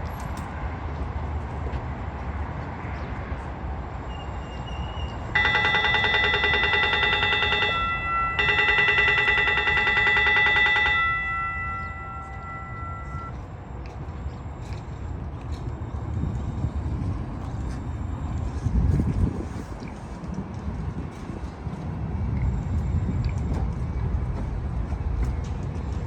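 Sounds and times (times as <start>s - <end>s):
rail vehicle warning bell ringing: 4.1s - 19.0s
steady low rumble: 5.2s - 26.0s.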